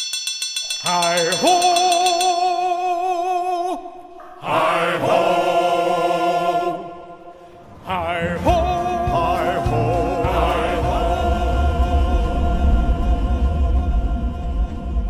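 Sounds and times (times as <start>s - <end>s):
voices singing wavering notes: 0.8s - 7.3s, 7.9s - 15.0s
low rumble: 7.8s - 15.0s.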